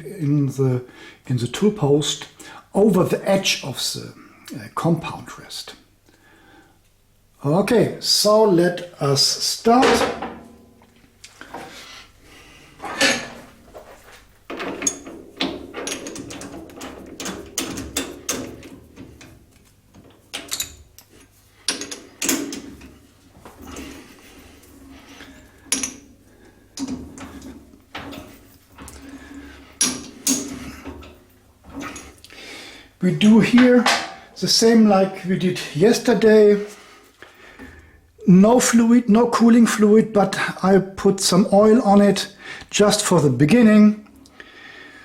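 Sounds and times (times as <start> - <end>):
metal parts sliding scrapes: 12.7 - 19.0
metal clunks and clicks: 12.8 - 13.9, 14.5 - 21.1, 25.2 - 32.2.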